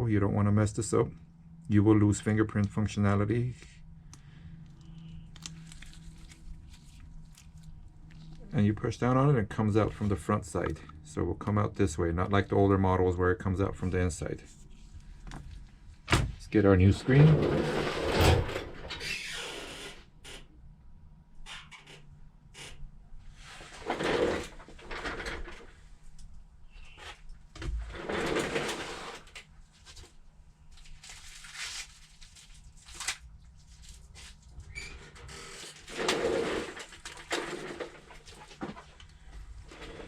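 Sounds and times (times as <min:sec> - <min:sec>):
packaging rustling: 0:04.8 - 0:08.4.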